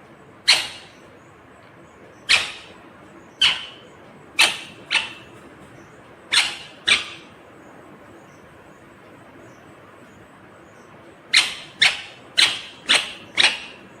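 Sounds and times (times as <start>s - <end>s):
parakeet sharp calls: 0.4s - 1.1s, 2.1s - 7.4s, 11.3s - 14.0s.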